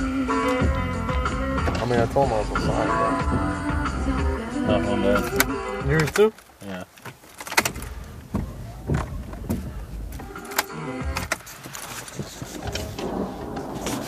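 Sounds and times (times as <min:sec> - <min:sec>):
car cabin rumble: 0:00.0 - 0:06.4, 0:07.1 - 0:14.0
sharp clicks and rattles: 0:05.1 - 0:14.0.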